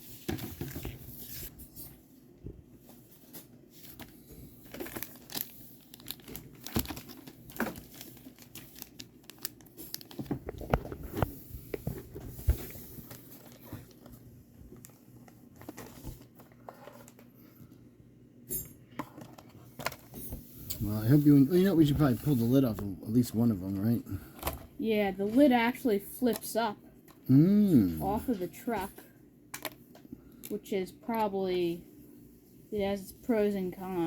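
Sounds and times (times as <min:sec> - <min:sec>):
packaging crinkling and rustling: 0:03.1 - 0:17.3.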